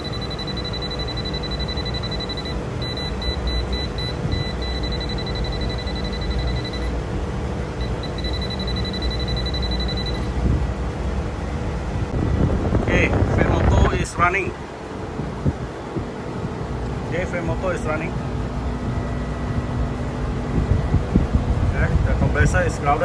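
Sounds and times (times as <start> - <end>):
high-pitched electronic tone: 0.0 - 7.0, 7.8 - 10.3
short beeps: 0.0 - 7.0, 7.8 - 10.3
low rumble: 9.1 - 16.1.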